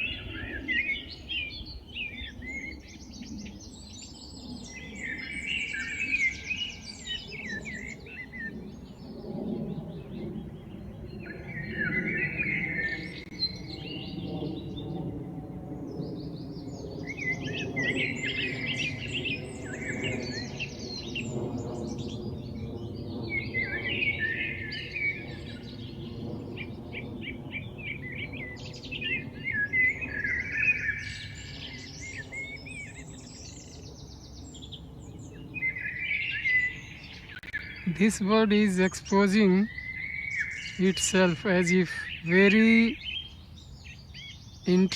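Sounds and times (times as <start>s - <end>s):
small birds chirping: 15.8s - 44.9s.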